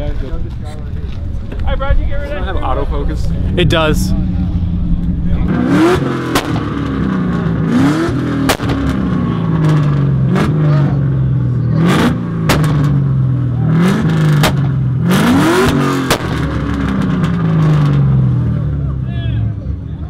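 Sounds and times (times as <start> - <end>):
car engine revving: 0.9 - 19.1
sharp exhaust pops: 4.8 - 7.5, 8.1 - 10.6, 12.4 - 13.0, 14.0 - 18.0.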